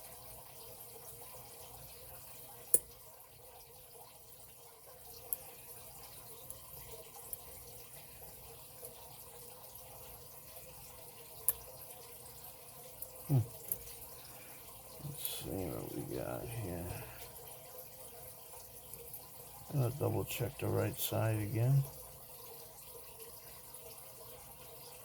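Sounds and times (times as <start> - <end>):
steady low hiss: 14.4 - 17.4, 19.6 - 21.9.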